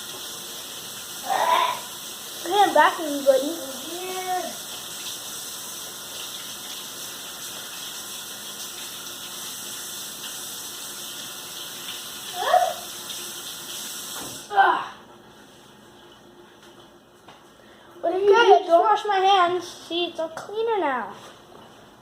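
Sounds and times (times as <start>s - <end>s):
tap water running into a sink: 0.0s - 14.5s.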